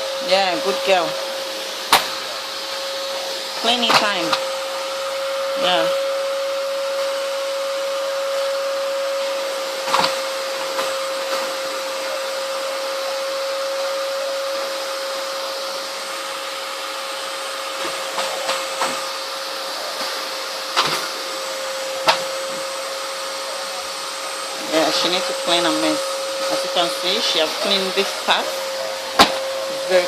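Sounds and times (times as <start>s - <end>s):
vacuum cleaner whining: 0.0s - 30.0s
vacuum knocking on floor: 22.0s - 22.7s, 29.1s - 29.5s.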